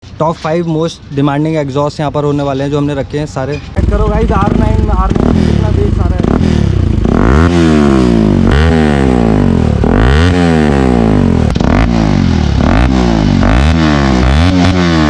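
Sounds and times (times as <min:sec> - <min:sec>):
motorcycle engine revving: 0:03.8 - 0:15.0.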